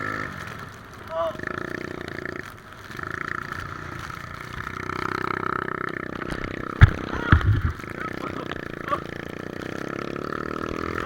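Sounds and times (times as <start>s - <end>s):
three-wheeler engine running: 0.0s - 11.0s
loud low thumps: 6.4s - 8.1s.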